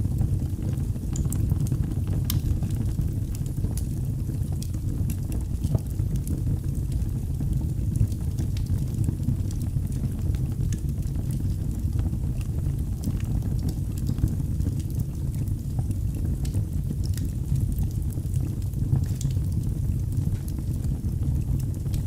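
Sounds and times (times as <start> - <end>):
fire flames rumbling: 0.0 - 22.0
wood crackling and popping: 0.0 - 22.0.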